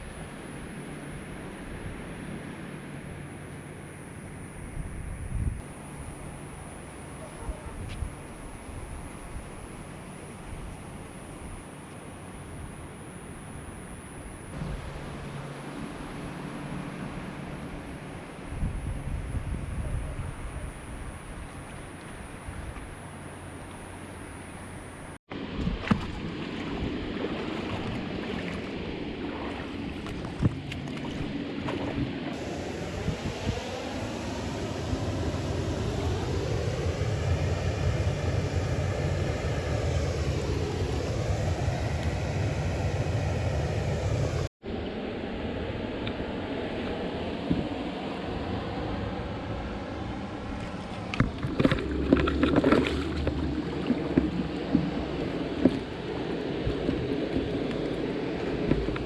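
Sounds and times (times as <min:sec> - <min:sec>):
wind rumbling on microphone: 0:04.2 - 0:59.0
creek water flowing: 0:50.2 - 0:59.0.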